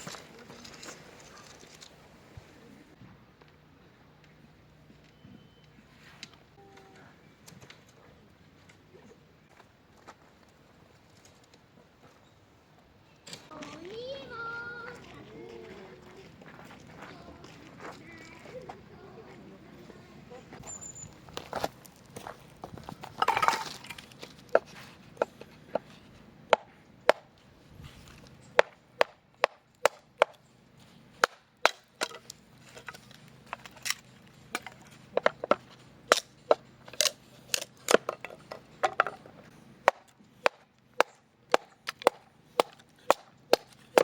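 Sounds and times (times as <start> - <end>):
sharp strikes on wood: 28.6 - 30.4, 31.2 - 32.3, 39.8 - 44.0.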